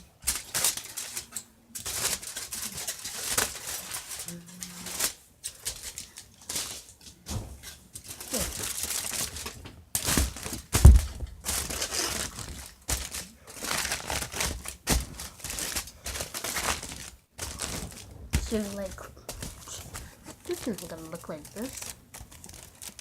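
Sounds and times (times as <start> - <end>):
thin sheet crumpling: 0.0 - 23.0
loud thump: 10.8 - 11.4.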